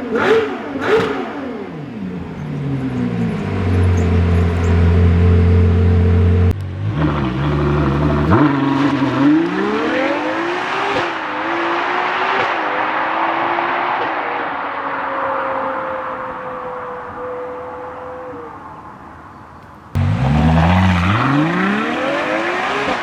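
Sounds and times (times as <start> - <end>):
sports car engine revving and idling: 0.0 - 13.4, 19.9 - 23.0.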